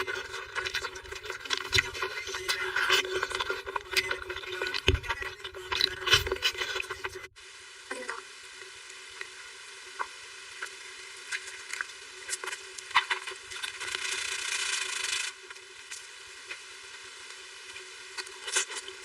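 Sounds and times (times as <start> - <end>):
crackling noise: 0.0 - 19.0
steady hiss: 0.0 - 19.0.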